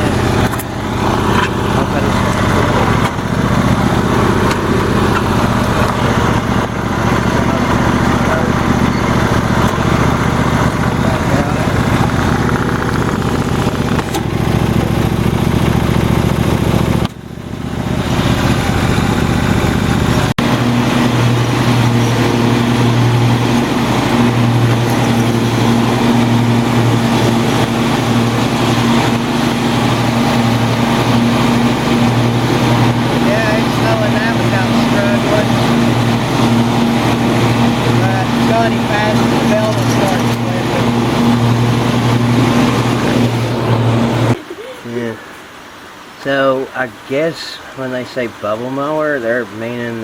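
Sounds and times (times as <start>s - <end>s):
lawn mower engine running: 0.0s - 50.0s.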